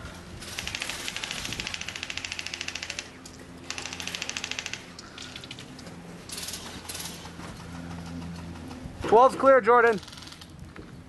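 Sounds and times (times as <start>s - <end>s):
airsoft rifle automatic bursts: 0.4s - 5.4s.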